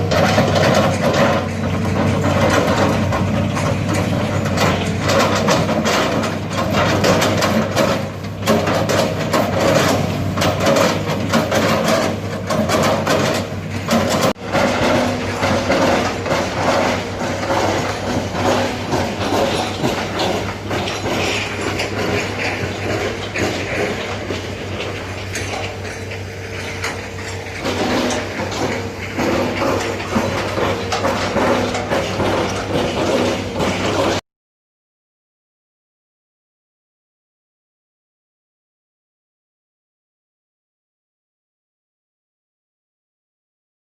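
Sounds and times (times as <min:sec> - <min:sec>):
excavator engine running under load: 0:00.0 - 0:34.2
machine knocks and clanks: 0:00.0 - 0:34.2.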